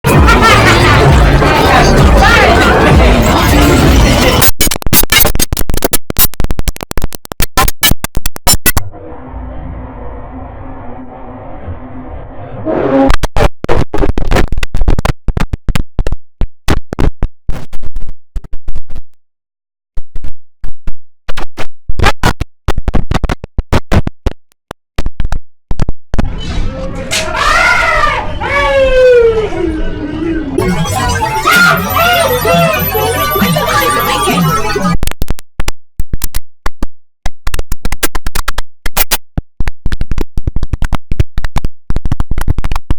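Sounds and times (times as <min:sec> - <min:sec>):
stuttering computer system sound: 0:00.1 - 0:16.1, 0:29.5 - 0:35.4
stuttering remixed shutdown sound: 0:29.9 - 0:35.0.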